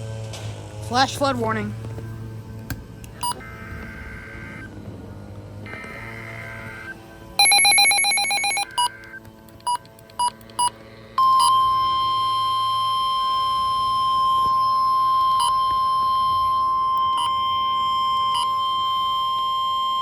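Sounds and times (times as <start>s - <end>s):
steady warning alarm tone: 3.0s - 20.0s
data header tones: 3.2s - 4.7s, 5.6s - 20.0s
short beeps: 7.4s - 9.0s.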